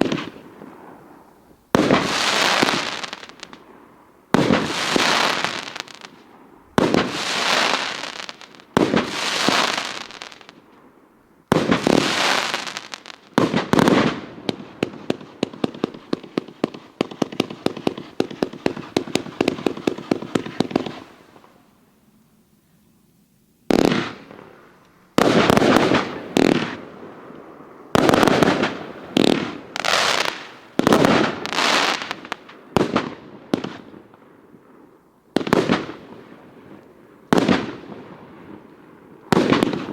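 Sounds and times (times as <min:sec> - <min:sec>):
fireworks launching and bursting: 0:00.0 - 0:10.9, 0:11.5 - 0:21.6, 0:23.7 - 0:34.0, 0:35.4 - 0:36.4, 0:37.3 - 0:38.7, 0:39.3 - 0:39.9
crackling firework tails: 0:00.0 - 0:39.9
rapid sharp pops: 0:15.1 - 0:21.1.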